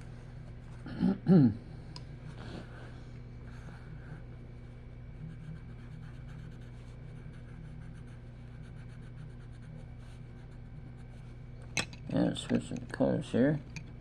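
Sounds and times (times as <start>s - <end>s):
low electrical hum: 0.0s - 14.0s
pencil scratching on paper: 5.2s - 11.2s.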